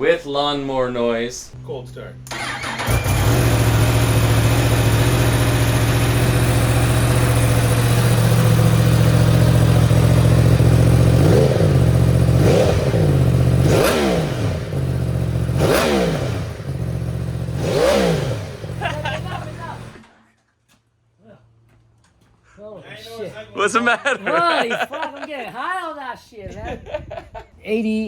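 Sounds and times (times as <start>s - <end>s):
motorcycle engine idling and revving: 2.3s - 20.2s.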